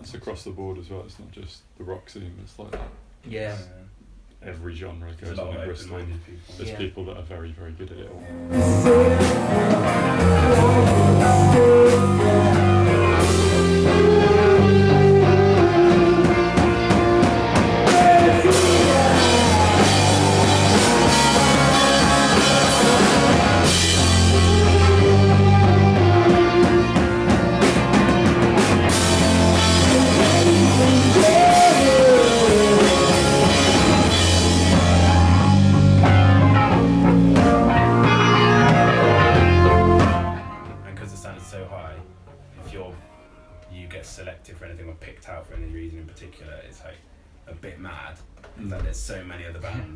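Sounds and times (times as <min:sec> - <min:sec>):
sliding lead guitar line: 0:08.1 - 0:41.6
rock band playing grunge: 0:08.2 - 0:41.3.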